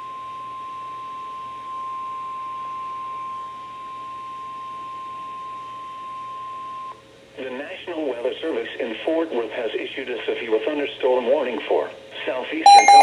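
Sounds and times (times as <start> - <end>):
faint radio hiss: 7.2 - 12.7
steady alarm tone: 12.7 - 13.0.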